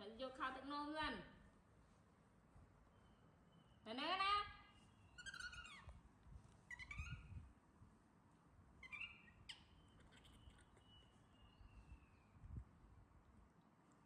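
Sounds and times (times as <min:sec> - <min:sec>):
baby monkey squeaky calls: 0:05.0 - 0:06.0, 0:06.7 - 0:07.4, 0:08.8 - 0:11.6
monkey whining: 0:05.2 - 0:05.9, 0:06.7 - 0:07.4, 0:08.8 - 0:10.6.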